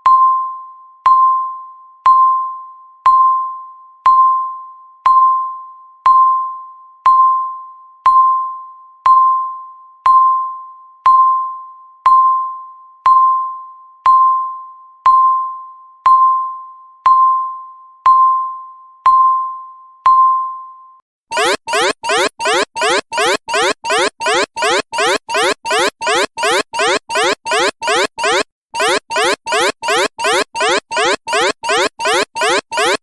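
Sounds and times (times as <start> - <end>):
electronic alarm sweeps: 21.3 - 33.0
timer beeping: 21.3 - 33.0.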